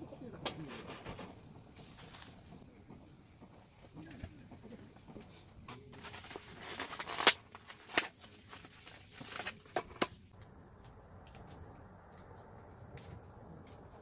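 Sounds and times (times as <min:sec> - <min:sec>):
handling rustling: 0:00.4 - 0:10.3.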